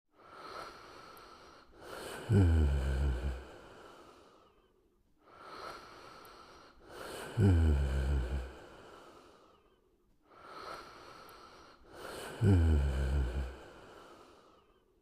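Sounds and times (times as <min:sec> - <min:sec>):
soft airy breaths: 0:00.1 - 0:15.0
cartoon character snoring: 0:01.9 - 0:03.6, 0:07.0 - 0:08.6, 0:12.0 - 0:13.7.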